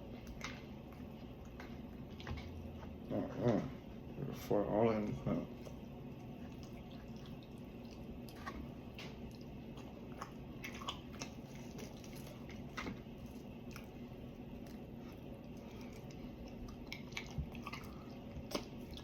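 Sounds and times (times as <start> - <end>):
steady low hum: 0.0 - 19.0
person chewing crunchy food: 5.5 - 19.0.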